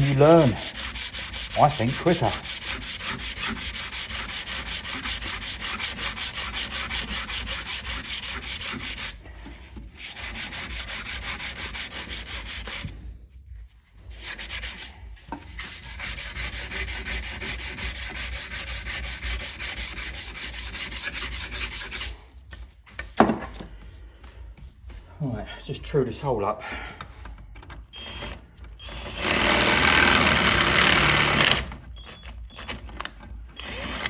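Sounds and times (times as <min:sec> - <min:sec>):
hand rubbing abrasive on steel: 0:00.0 - 0:25.8.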